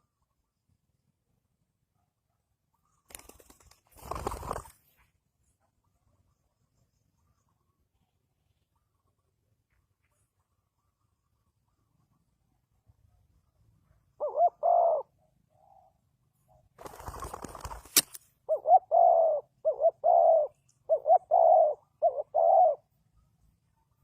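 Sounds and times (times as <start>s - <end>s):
dove cooing: 14.2s - 16.0s, 18.5s - 22.9s.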